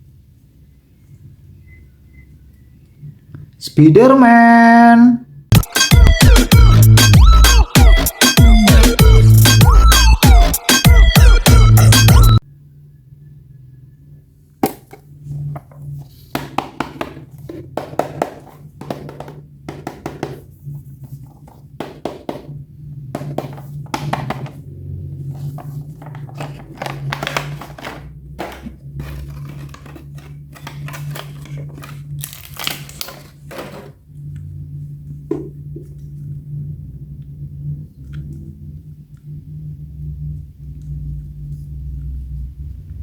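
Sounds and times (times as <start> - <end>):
steady low hum: 12.4 - 43.0
toy clunks and knocks: 23.2 - 24.6
plastic packaging crinkling: 25.3 - 34.0.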